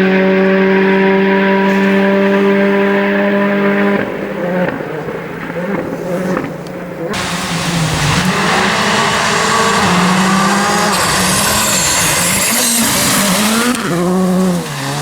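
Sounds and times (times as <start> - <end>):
rally car engine revving: 0.0 - 15.0
tyres rushing: 0.0 - 15.0.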